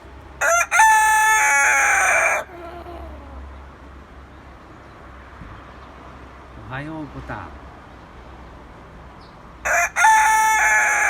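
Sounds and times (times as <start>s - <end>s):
rooster crowing: 0.4s - 3.5s, 9.6s - 11.0s.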